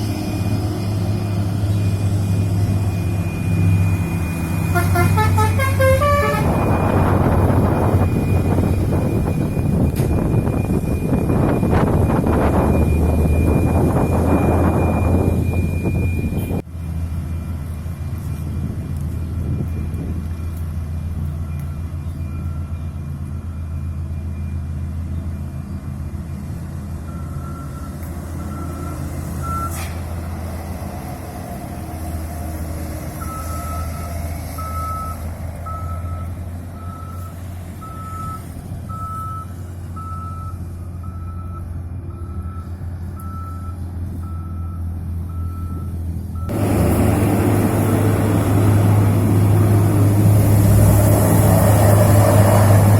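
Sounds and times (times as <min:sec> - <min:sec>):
reversing beeper: 0:00.2 - 0:16.6, 0:33.2 - 0:51.2
diesel engine idling: 0:28.3 - 0:52.9.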